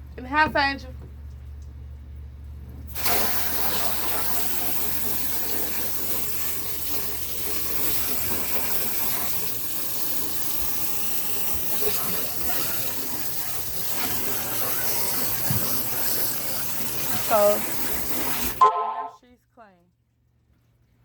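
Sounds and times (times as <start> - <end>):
water spraying and splashing: 2.9 - 18.6.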